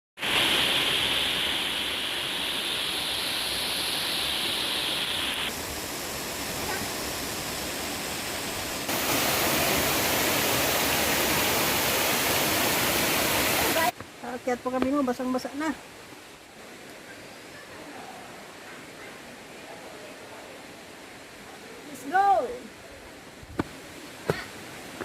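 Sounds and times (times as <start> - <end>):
waterfall rushing: 0.2 - 14.0.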